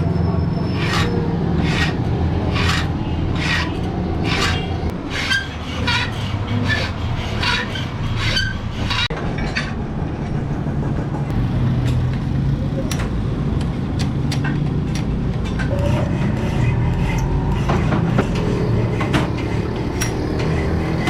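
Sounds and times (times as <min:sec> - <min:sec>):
hand scraping strokes: 0:00.7 - 0:09.1.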